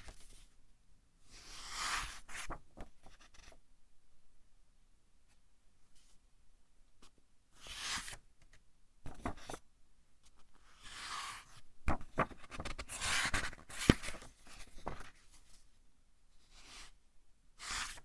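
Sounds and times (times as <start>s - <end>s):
book pages turning: 11.9s - 15.1s.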